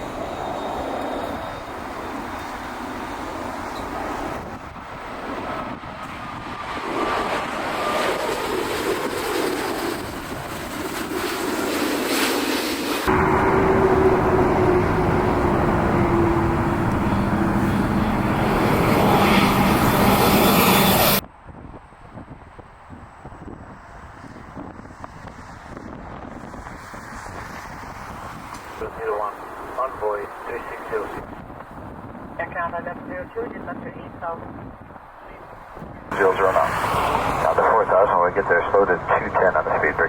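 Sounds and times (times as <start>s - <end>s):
jet engine hum: 0.0s - 21.2s, 22.6s - 40.0s
jet airliner engines: 0.0s - 40.0s.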